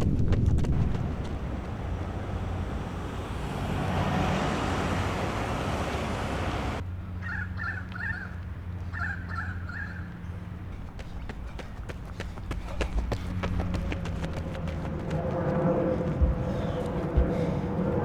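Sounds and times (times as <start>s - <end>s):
vehicle passing: 0.0s - 7.2s, 8.5s - 18.0s
steady low hum: 10.3s - 18.0s.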